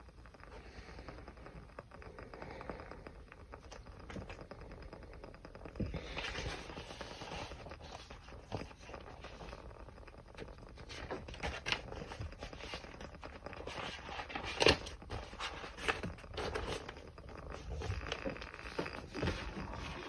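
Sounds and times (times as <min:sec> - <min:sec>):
small fire crackling: 0:00.0 - 0:20.0
hissing flame: 0:00.1 - 0:14.1.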